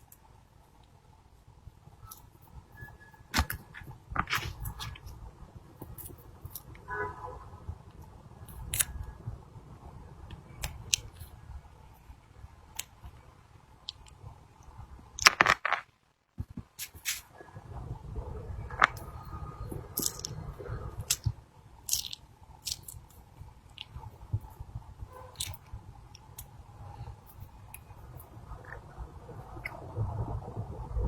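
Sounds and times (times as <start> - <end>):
faint low hum: 0.0 - 31.0
small objects clicking and tapping: 10.3 - 11.4, 15.2 - 17.2, 18.8 - 26.5.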